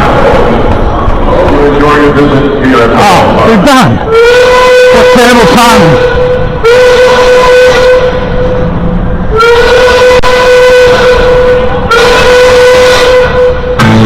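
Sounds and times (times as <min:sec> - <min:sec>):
loud horn blasts: 0:03.8 - 0:14.0.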